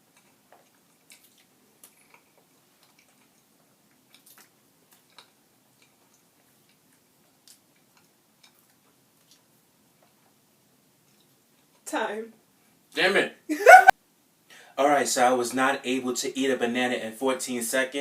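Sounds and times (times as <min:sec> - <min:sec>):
person chewing wetly: 0:00.0 - 0:10.4.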